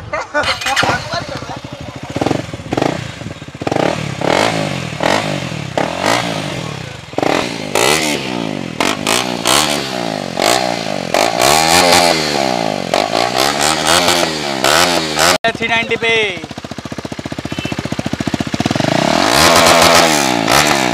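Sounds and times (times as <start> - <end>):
motorcycle engine revving: 0.3 - 20.9.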